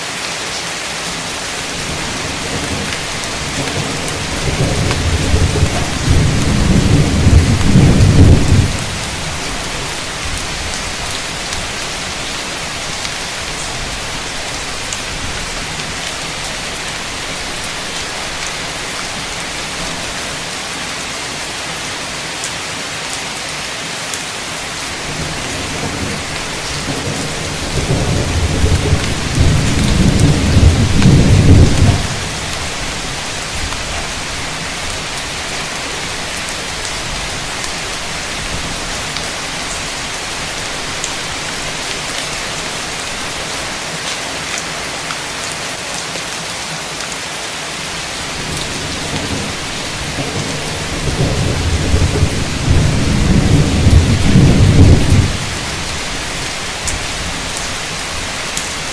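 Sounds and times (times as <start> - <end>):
heavy rain pouring: 0.0 - 58.9
deep thunder rolling: 1.7 - 11.1, 25.0 - 34.6, 48.4 - 56.0.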